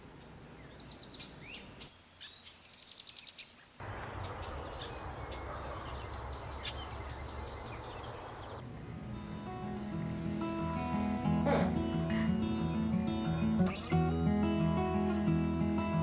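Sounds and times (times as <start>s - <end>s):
small birds singing and chirping: 0.2s - 8.6s.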